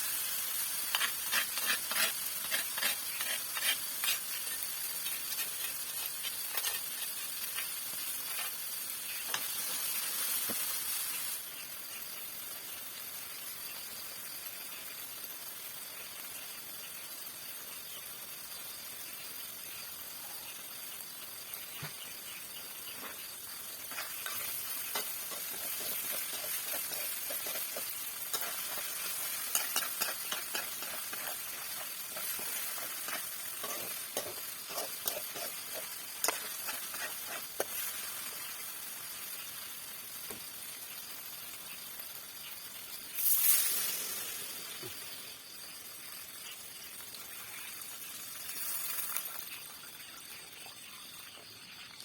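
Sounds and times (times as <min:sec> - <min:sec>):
loud hiss: 0:00.0 - 0:11.5, 0:43.1 - 0:45.6
food sizzling in a pan: 0:00.0 - 0:52.0
utensil scraping a pan: 0:00.5 - 0:08.7, 0:23.8 - 0:38.1.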